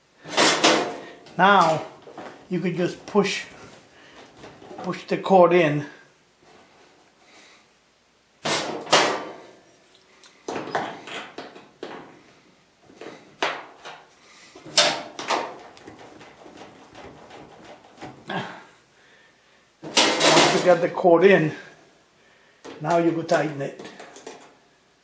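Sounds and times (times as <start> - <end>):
cord knocking and rattling: 14.6 - 18.5.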